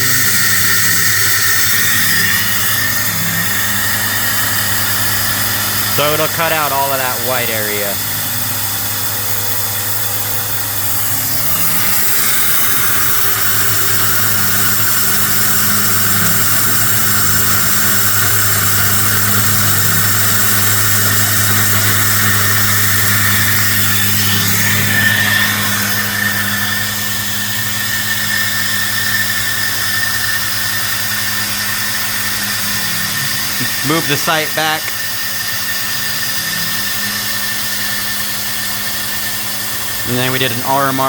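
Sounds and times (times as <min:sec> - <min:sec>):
high squeal: 0:00.0 - 0:41.0
metal cutting noise: 0:00.0 - 0:41.0
milling machine motor hum: 0:00.0 - 0:41.0.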